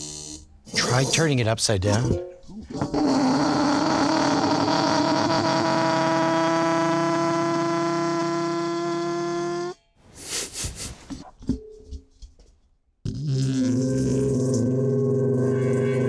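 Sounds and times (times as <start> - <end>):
short hiss: 10.1 - 11.2.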